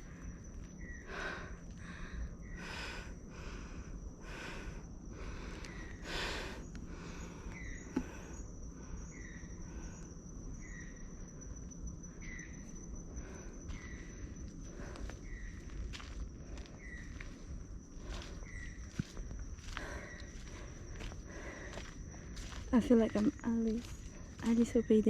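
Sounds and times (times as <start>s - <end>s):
high insect trill: 0.0s - 25.0s.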